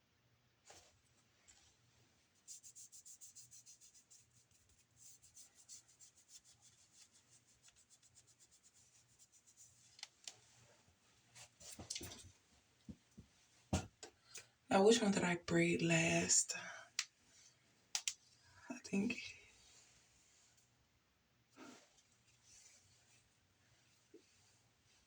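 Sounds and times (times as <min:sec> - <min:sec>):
hair rubbing strokes: 0:02.4 - 0:10.6, 0:21.6 - 0:25.0.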